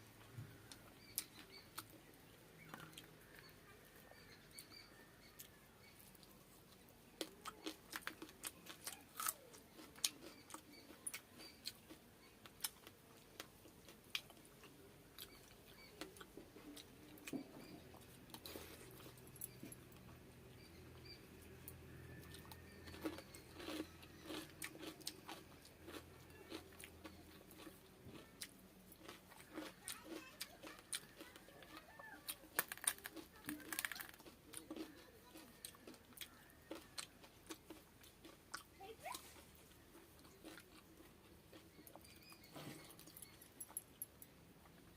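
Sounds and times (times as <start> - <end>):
person chewing crunchy food: 0.6 - 3.6, 4.2 - 44.8.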